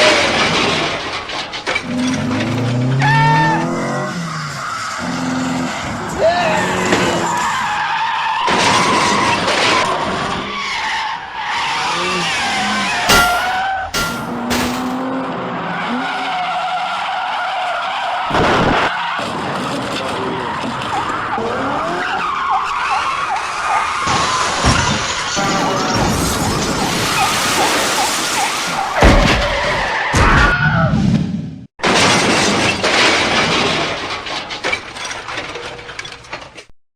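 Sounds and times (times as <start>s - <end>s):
tyres skidding: 0.0s - 30.1s
car crash impacts: 13.1s - 15.1s
glass shattering: 13.1s - 15.1s.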